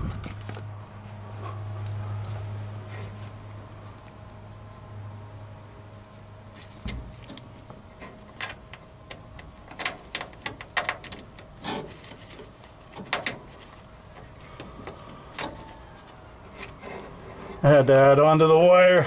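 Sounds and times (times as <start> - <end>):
clicks and taps handling wire: 6.5 - 17.6.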